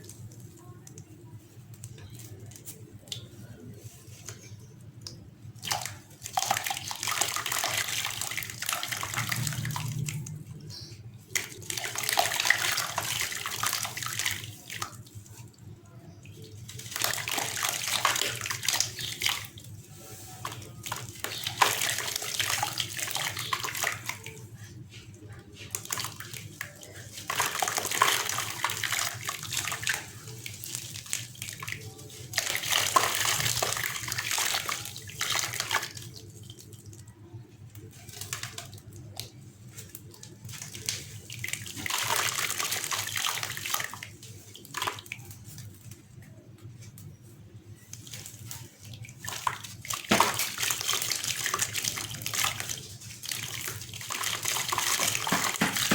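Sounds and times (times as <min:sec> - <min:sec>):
sand-cement chunks crumbling in water: 0:48.1 - 0:55.9.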